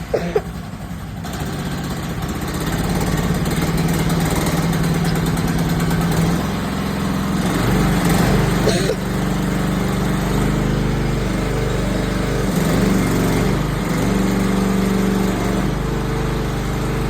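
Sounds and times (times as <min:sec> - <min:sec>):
engine humming steadily: 0:00.0 - 0:17.0.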